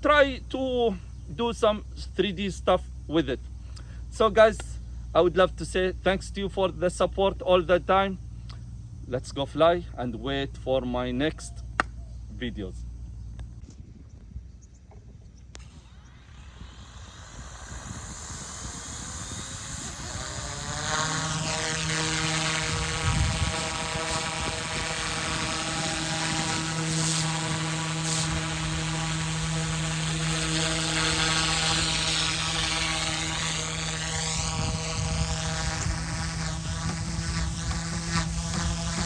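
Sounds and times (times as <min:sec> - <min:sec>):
rc helicopter motor whine: 0:14.9 - 0:39.0.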